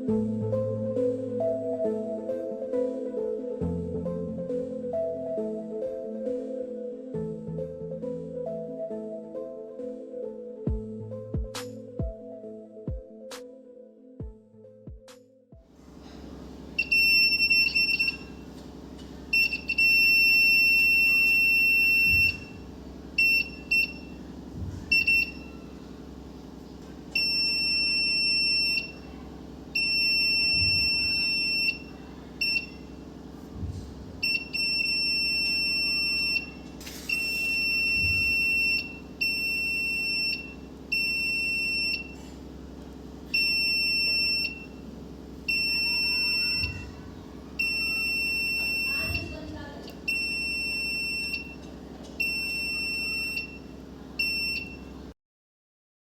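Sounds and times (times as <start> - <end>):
high-pitched alarm buzzer: 16.8 - 18.4, 19.3 - 22.6, 27.2 - 29.1, 29.8 - 32.9, 34.2 - 42.2, 43.4 - 44.8, 45.5 - 47.0, 47.6 - 49.4, 50.1 - 51.5.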